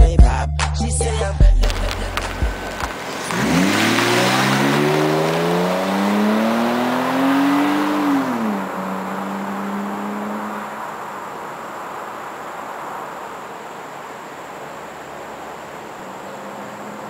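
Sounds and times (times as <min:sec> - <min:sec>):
car exhaust accelerating: 0:01.6 - 0:12.0.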